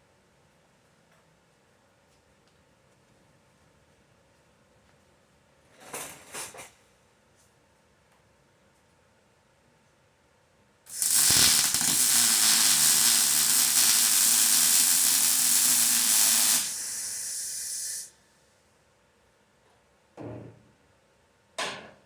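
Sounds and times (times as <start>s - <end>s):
welding arc crackling hiss: 10.9s - 18.1s.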